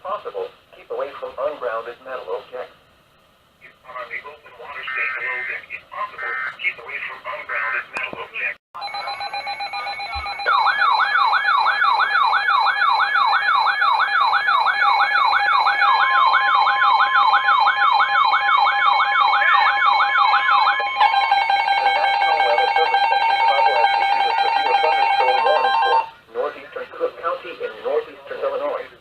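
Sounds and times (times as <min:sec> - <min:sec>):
rising and falling siren wail: 0:10.4 - 0:26.1.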